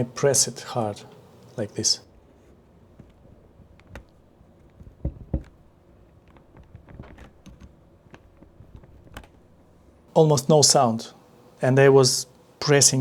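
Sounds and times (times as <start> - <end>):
soft knocks: 4.7 - 5.7.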